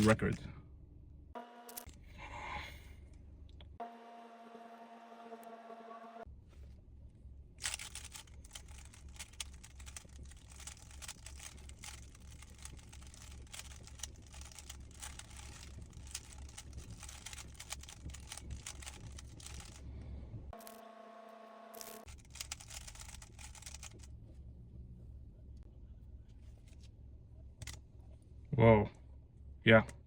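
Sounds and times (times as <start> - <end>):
low hum: 0.0 - 30.0
plastic puzzle cube clicking: 7.6 - 19.8, 21.8 - 24.0.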